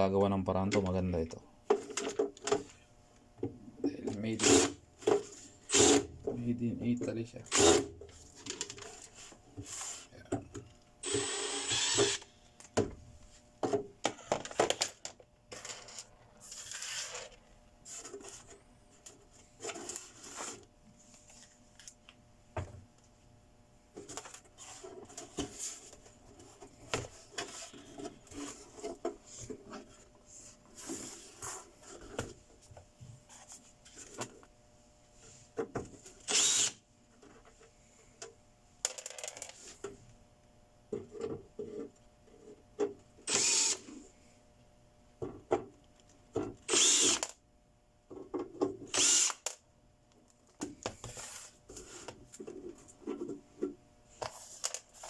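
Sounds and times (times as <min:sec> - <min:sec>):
power drill bursts: 0:05.7 - 0:06.1, 0:11.0 - 0:12.3, 0:36.3 - 0:36.8, 0:43.3 - 0:43.8, 0:46.7 - 0:47.3, 0:48.9 - 0:49.5.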